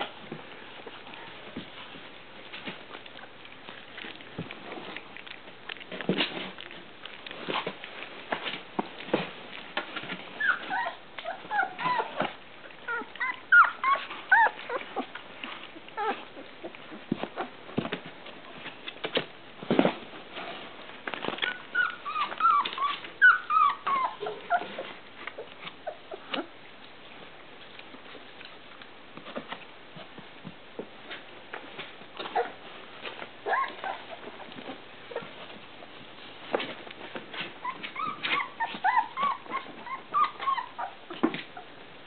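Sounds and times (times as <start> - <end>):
scuffling and small knocks: 0.0 - 42.0
puppies whimpering and squeaking: 9.9 - 17.6, 21.2 - 26.6, 32.2 - 35.6, 37.3 - 41.8.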